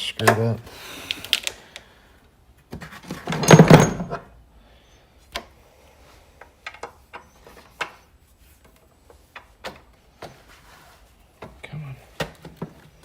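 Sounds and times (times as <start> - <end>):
hand tools and metal clattering: 2.8 - 4.3.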